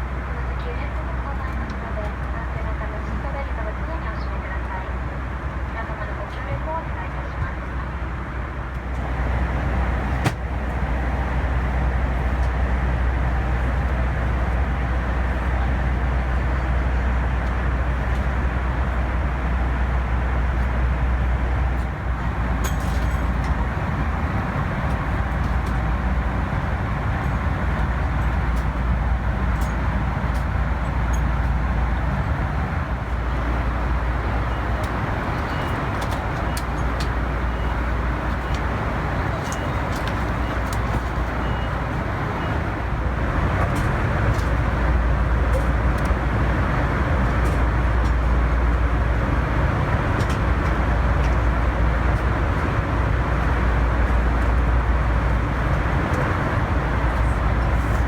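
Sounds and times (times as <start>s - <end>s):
airplane cabin engine rumble: 0.0s - 58.0s.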